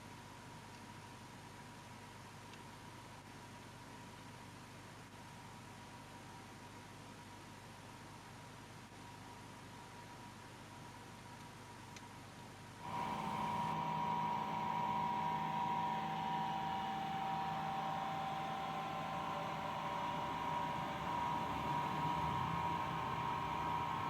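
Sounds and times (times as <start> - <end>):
small electric motor whining: 12.8 - 24.0.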